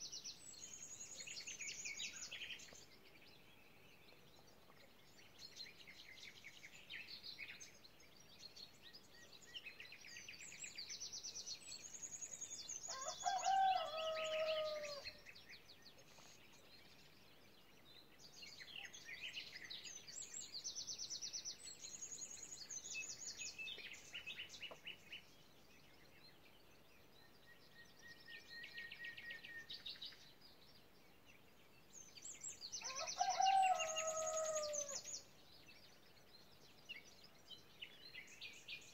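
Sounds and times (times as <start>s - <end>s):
songbirds trilling: 11.8s - 38.9s.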